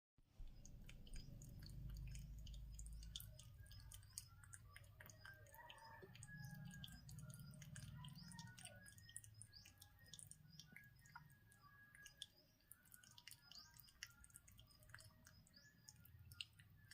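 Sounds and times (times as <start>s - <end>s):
birds chirping faintly: 0.2s - 16.9s
rabbit chewing with crisp clicks: 0.4s - 10.8s.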